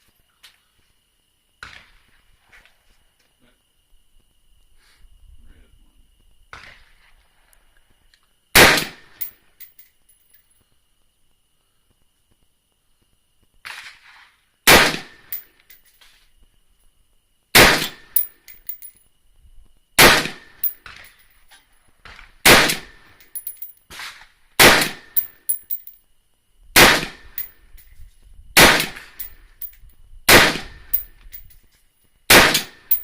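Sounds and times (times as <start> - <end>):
rifle shots: 8.6 - 9.3, 14.7 - 15.4, 17.6 - 18.2, 20.0 - 21.0, 22.4 - 23.0, 23.9 - 25.3, 26.8 - 27.4, 28.6 - 29.3, 30.3 - 31.1, 32.3 - 33.0
metallic clinks: 9.1 - 10.6, 15.3 - 15.9, 18.1 - 19.1, 20.6 - 21.4, 23.1 - 23.9, 25.1 - 26.0, 27.2 - 27.9, 29.1 - 30.0, 30.8 - 31.7, 32.6 - 33.0.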